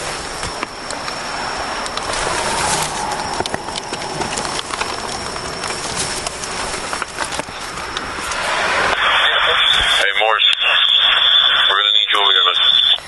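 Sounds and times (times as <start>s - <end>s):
passing road traffic: 0.8s - 9.4s.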